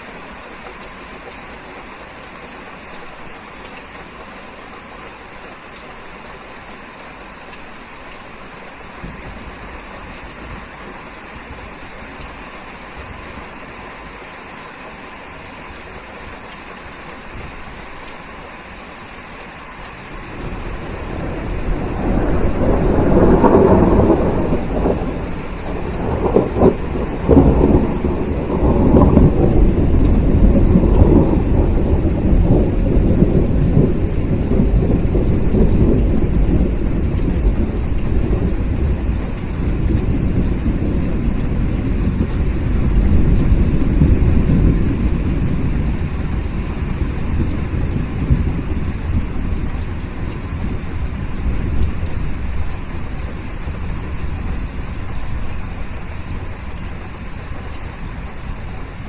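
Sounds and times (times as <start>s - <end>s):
steady rain: 0.0s - 59.0s
low roll of thunder: 20.1s - 52.9s.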